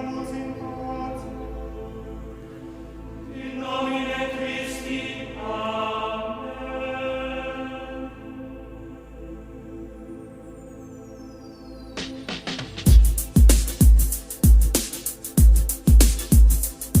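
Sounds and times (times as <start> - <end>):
male voices chanting in unison: 3.3 - 8.7.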